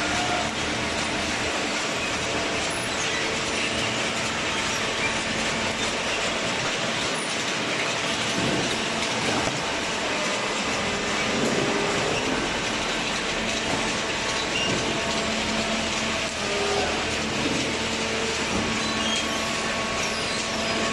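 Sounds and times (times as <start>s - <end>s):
baler machinery clatter and rumble: 0.0s - 20.9s.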